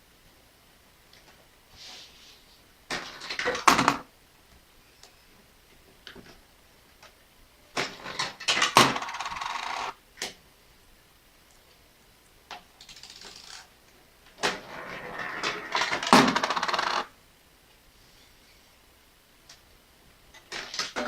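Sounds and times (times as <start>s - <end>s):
coins clattering through sorter: 8.1s - 9.9s, 14.8s - 17.1s.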